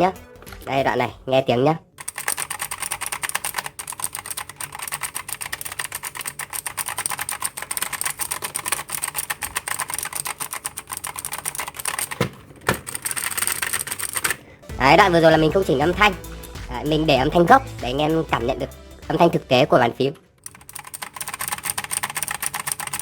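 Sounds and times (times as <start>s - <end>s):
clicky mechanical keyboard typing: 2.0s - 14.4s, 20.4s - 23.0s.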